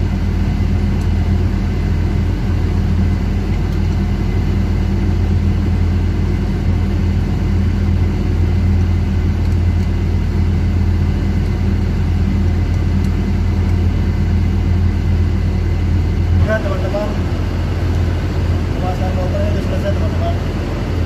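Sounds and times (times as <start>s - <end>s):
low drone of running machinery: 0.0s - 21.0s.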